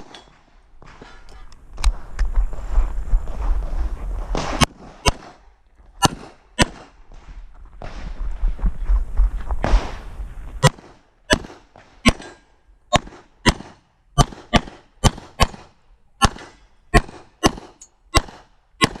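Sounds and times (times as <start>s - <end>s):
handgun shots: 10.6s - 19.0s.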